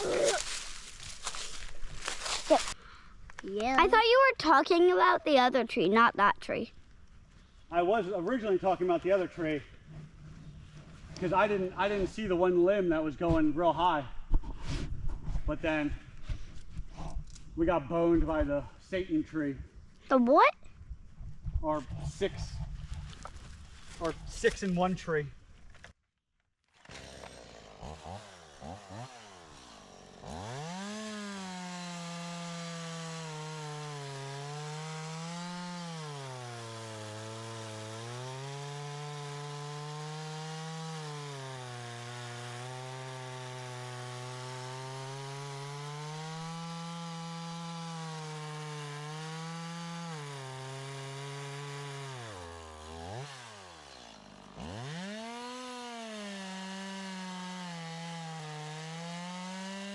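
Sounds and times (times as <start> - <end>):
chainsaw cutting wood: 0.0 - 2.8, 26.7 - 59.9.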